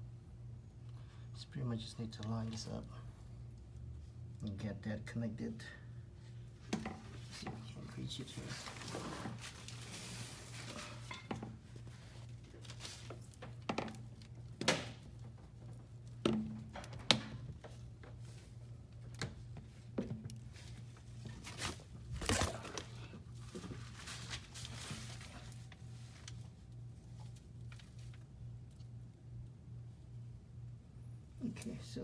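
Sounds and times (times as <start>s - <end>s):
steady low hum: 0.0s - 13.5s.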